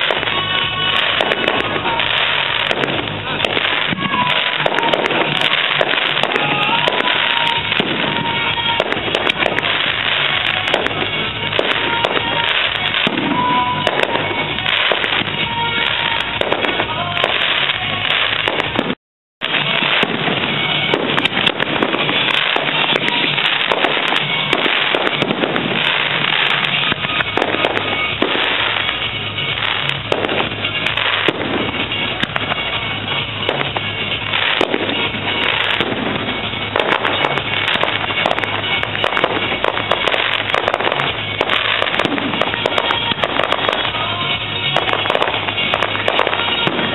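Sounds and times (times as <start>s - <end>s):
fireworks bangs and crackling: 0.0s - 46.9s.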